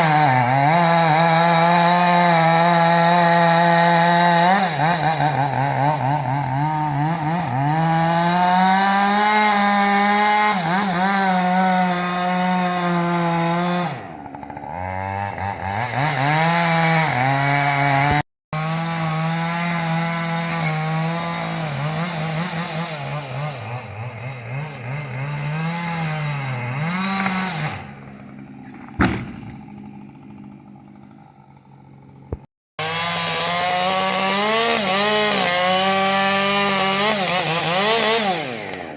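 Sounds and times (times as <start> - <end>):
chainsaw cutting wood: 0.0 - 38.9
sharp knock: 28.9 - 29.6.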